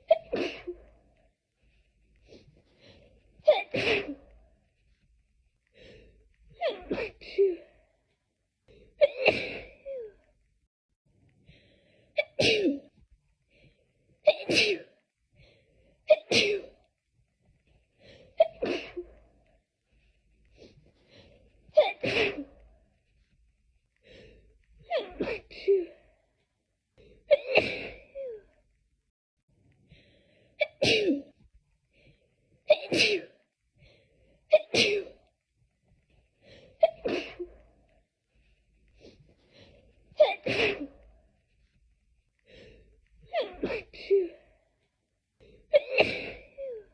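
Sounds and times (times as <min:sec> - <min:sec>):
person sneezing: 0:00.0 - 0:00.9, 0:03.5 - 0:04.3, 0:12.2 - 0:12.9, 0:14.3 - 0:15.0, 0:21.8 - 0:22.6, 0:32.7 - 0:33.4, 0:40.2 - 0:41.0, 0:45.7 - 0:46.9.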